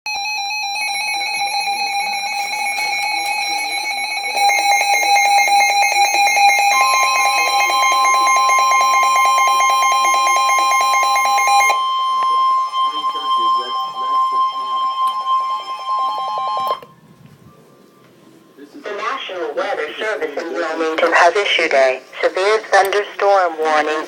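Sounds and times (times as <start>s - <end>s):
pulsing electronic alarm tone: 0.1s - 17.0s
higher steady tone: 0.8s - 17.0s.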